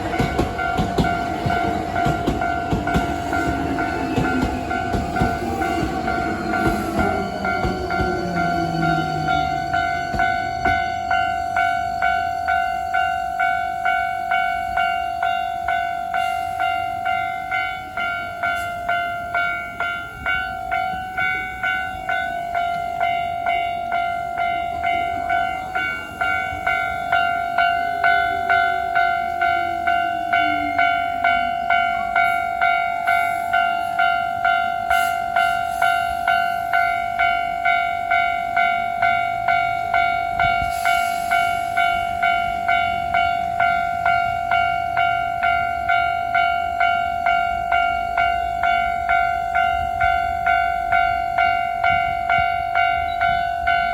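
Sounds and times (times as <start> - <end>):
falling whine from train: 0.0 - 14.8, 39.6 - 53.9
level-crossing bell ringing: 0.0 - 53.9
train passing: 0.0 - 53.9.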